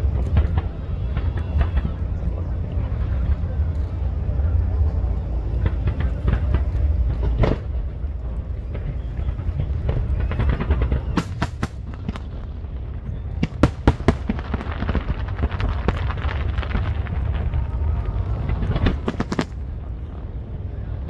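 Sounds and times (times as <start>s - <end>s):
fireworks cracking: 0.0s - 20.4s
low rumble: 0.0s - 21.0s.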